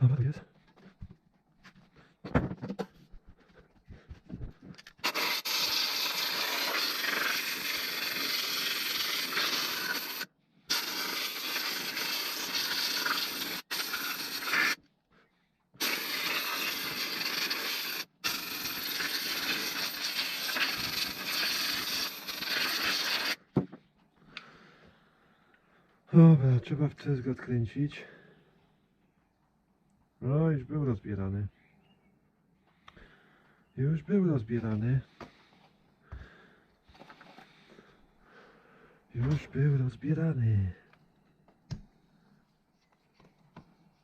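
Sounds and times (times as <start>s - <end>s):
cleaning spray hissing: 5.0s - 14.8s, 15.8s - 23.5s.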